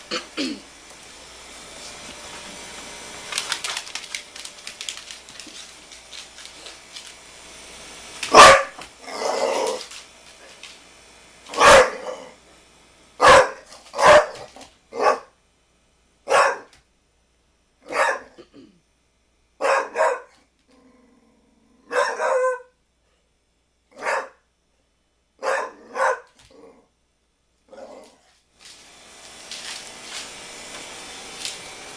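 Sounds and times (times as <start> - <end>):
dog barking loudly: 8.3 - 9.7, 11.5 - 12.3, 13.2 - 15.3, 16.3 - 16.7, 17.9 - 18.4, 19.6 - 20.4, 21.9 - 22.7, 24.0 - 24.4, 25.4 - 26.3.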